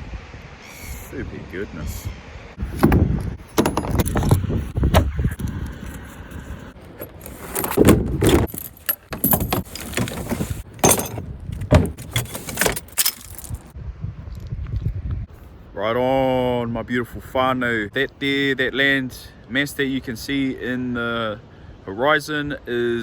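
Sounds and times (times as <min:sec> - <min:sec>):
heavy bumps and knocks: 0:02.6 - 0:06.0, 0:06.8 - 0:13.7
jangling and clinking: 0:02.6 - 0:13.7.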